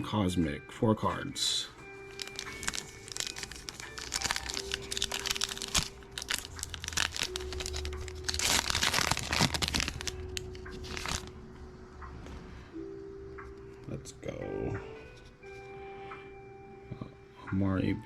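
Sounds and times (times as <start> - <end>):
wrapper tearing and crinkling: 2.1 - 11.3.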